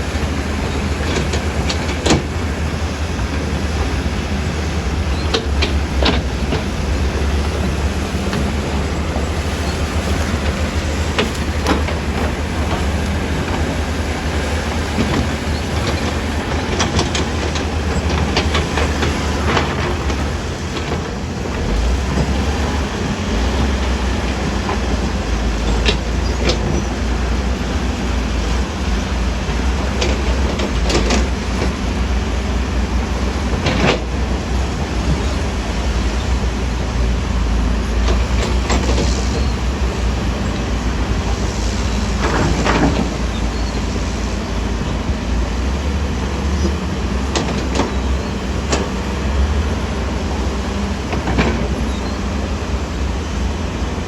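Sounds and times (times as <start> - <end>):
diesel engine rumbling: 0.0 - 54.0
metal clanks and knocks: 0.3 - 22.4.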